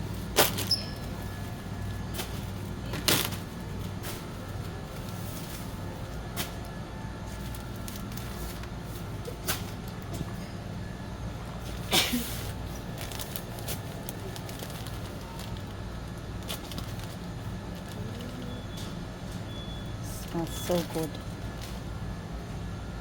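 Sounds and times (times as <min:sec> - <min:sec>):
low shop hum: 0:00.0 - 0:23.0
clicks and knocks of goods handled: 0:00.4 - 0:01.2, 0:02.1 - 0:10.4, 0:11.7 - 0:19.5.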